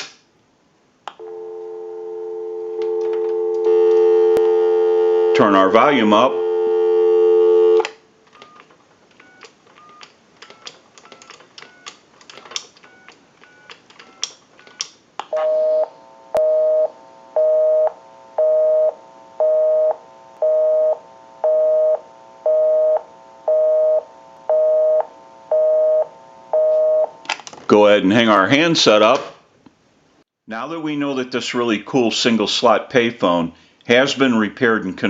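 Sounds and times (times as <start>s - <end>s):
dial tone: 1.2s - 5.4s, 6.3s - 7.9s
busy signal beeping: 1.2s - 5.5s, 15.4s - 27.1s.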